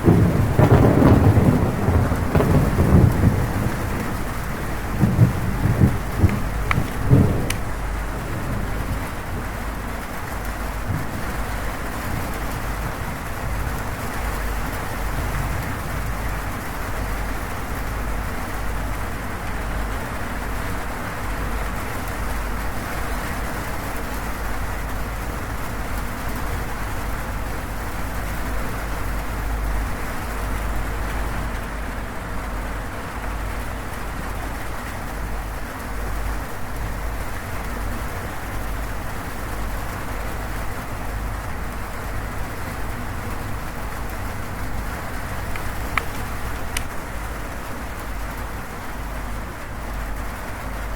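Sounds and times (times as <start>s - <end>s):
thunderclap: 0.0s - 16.7s, 43.1s - 47.1s
heavy rain on metal roof: 0.0s - 50.9s.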